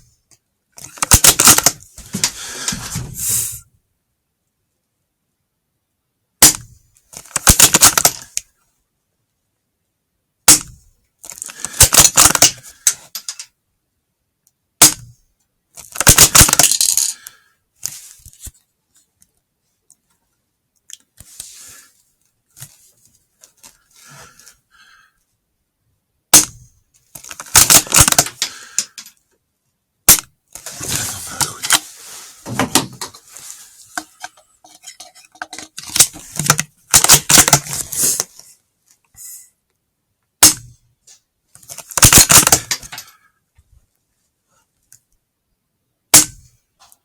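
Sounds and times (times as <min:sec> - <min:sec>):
sharp loud cracks: 0:00.9 - 0:01.8, 0:07.3 - 0:08.3, 0:11.5 - 0:12.6, 0:14.8 - 0:15.1, 0:15.9 - 0:17.1, 0:27.4 - 0:28.9, 0:36.9 - 0:37.6, 0:40.4 - 0:40.7, 0:42.0 - 0:42.9
crackling scuffling noise: 0:30.6 - 0:36.5.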